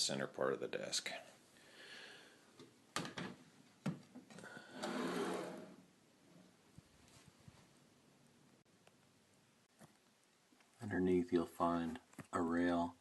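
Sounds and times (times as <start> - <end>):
wood sliding on rails: 4.4 - 5.9.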